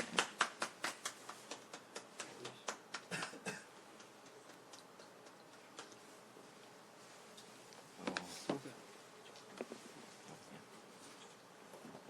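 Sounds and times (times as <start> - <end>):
group hand clapping: 0.0 - 6.1.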